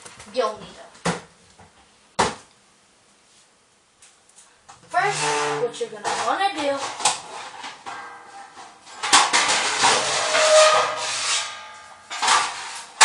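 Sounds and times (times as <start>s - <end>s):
metal baking pans clattering: 4.9s - 13.0s.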